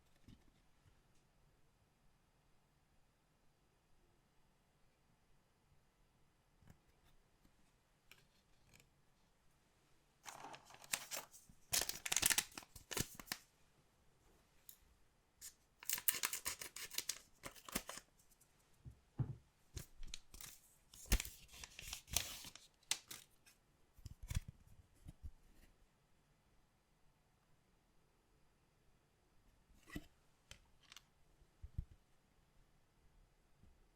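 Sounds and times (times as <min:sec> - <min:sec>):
packaging being torn open: 0:10.3 - 0:13.4, 0:15.8 - 0:18.0.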